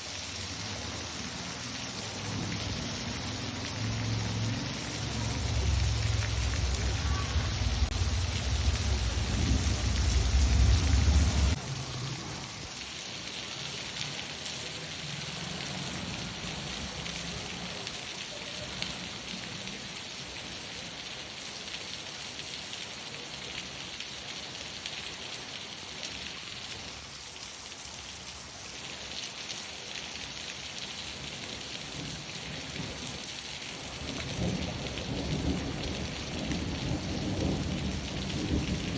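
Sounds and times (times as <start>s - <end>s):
rain falling: 0.0s - 38.9s
thunder rumbling: 2.0s - 12.6s, 34.0s - 38.9s.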